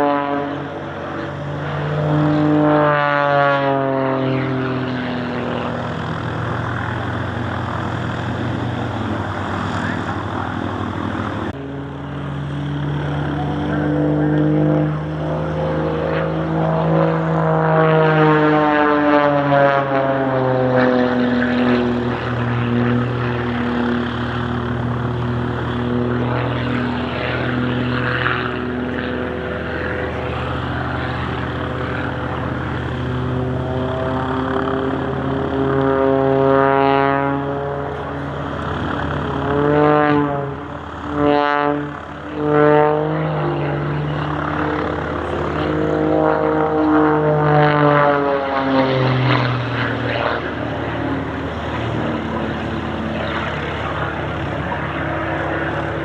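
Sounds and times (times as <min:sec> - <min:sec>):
propeller aircraft flying past: 0:00.0 - 0:56.0.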